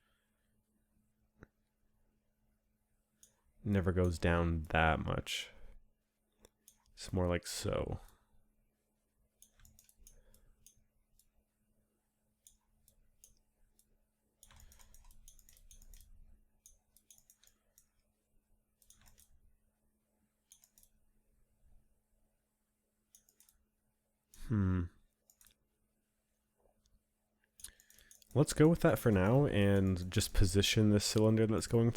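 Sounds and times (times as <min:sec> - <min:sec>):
mouse and keyboard clicking: 0:09.4 - 0:11.3, 0:14.4 - 0:18.0, 0:18.8 - 0:19.4, 0:20.5 - 0:21.0.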